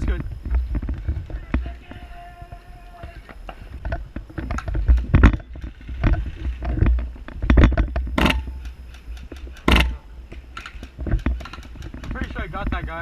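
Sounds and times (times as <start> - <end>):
footsteps on dirt: 0.0 - 13.0
sharp crack: 8.2 - 12.4.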